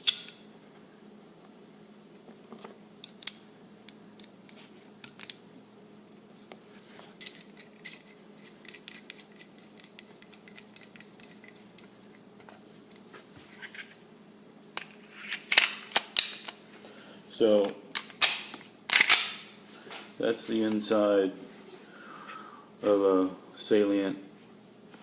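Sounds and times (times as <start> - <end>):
pistol parts clicking: 18.0 - 19.5.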